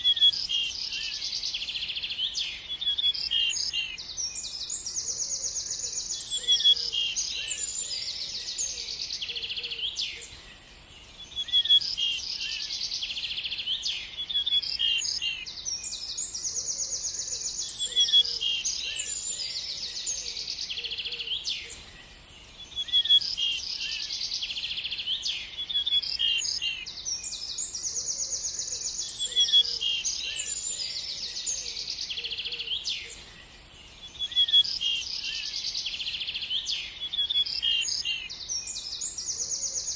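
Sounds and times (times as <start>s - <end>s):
small birds chirping and singing: 0.0s - 39.9s.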